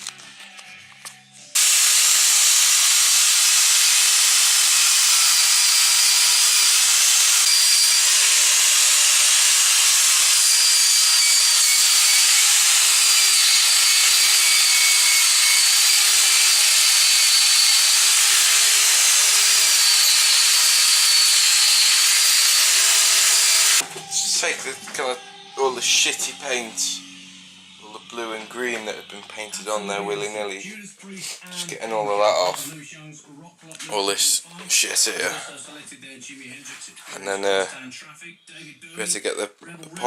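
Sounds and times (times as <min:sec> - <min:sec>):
power tool stripping paint off metal: 0:01.6 - 0:24.0.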